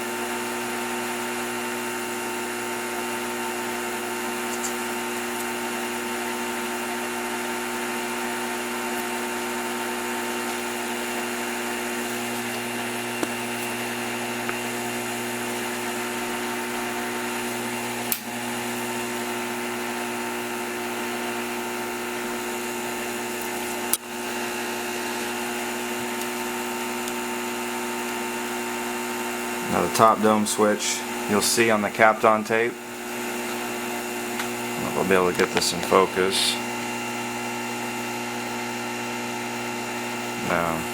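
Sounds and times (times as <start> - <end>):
small electric motor whining: 7.1 - 19.9.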